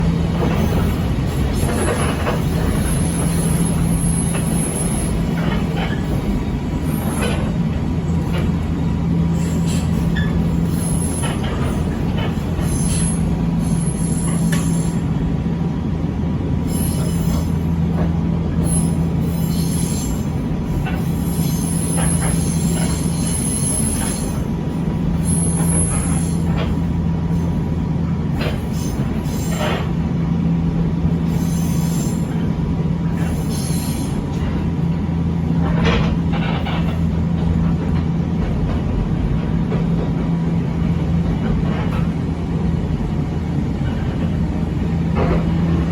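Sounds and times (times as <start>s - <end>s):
electric railcar running: 0.0s - 45.9s
high-pitched wheel squeal: 1.6s - 6.2s, 9.3s - 11.8s, 12.6s - 15.0s, 18.6s - 24.4s, 31.3s - 32.4s.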